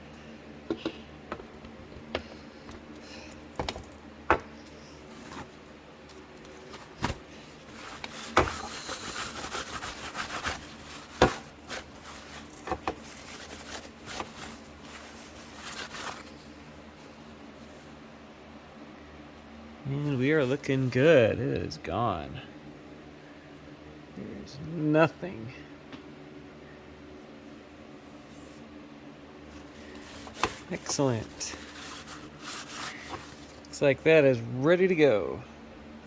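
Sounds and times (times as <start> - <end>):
rubbing on abrasive paper: 7.6 - 16.5, 30.0 - 33.6.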